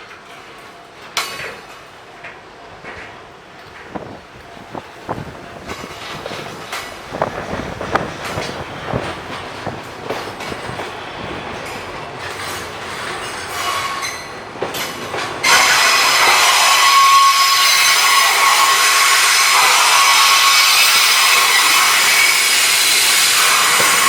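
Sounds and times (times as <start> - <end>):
train wheels clacking over rail joints: 0.0 - 24.0
train wheel squeal: 5.6 - 24.0.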